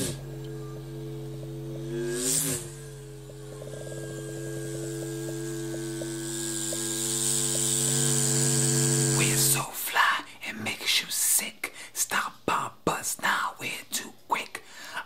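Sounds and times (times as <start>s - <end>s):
low buzzing drone: 0.0s - 9.7s.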